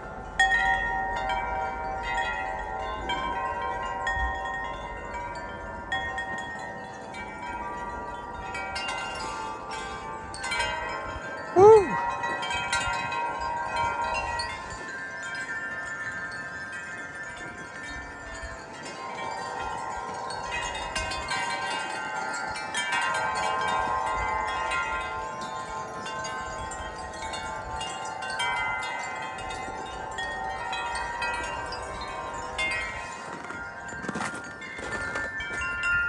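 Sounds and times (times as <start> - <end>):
wind chimes ringing: 0.0 - 36.0.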